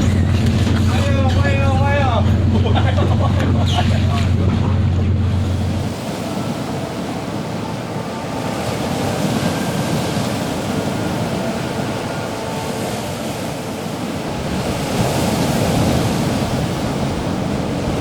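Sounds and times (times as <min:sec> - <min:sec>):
sea waves: 0:00.0 - 0:18.0
wind: 0:00.0 - 0:18.0.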